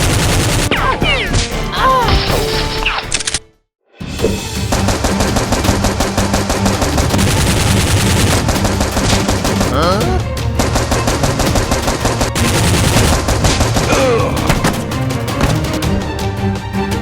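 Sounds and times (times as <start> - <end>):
rapid automatic gunfire: 0.0 - 0.8, 4.7 - 9.9, 10.6 - 14.0.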